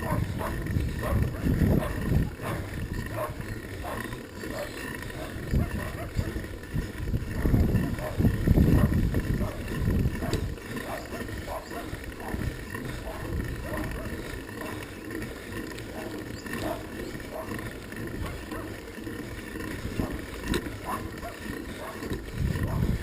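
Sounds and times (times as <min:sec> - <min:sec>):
wind buffeting microphone: 0:00.0 - 0:03.5, 0:05.1 - 0:14.3, 0:22.0 - 0:23.0.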